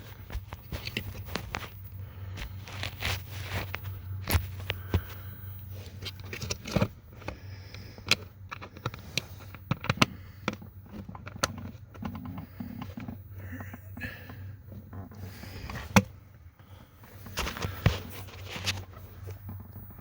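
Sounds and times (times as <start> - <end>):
steady low hum: 0.0 - 20.0
plastic clicks taps and scrapes: 6.0 - 13.1.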